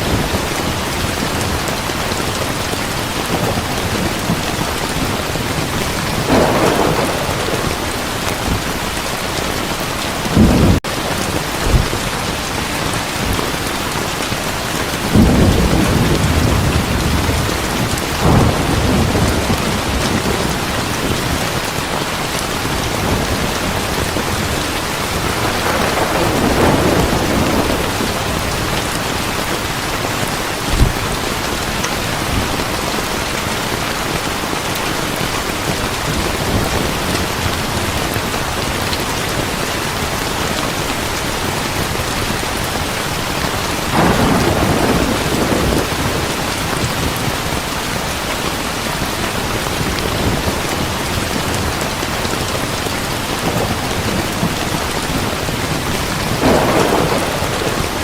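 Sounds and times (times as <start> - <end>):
thunder rolling: 0.0 - 13.6, 15.0 - 33.1, 43.8 - 47.5, 53.5 - 58.0
heavy rain falling: 0.0 - 58.0.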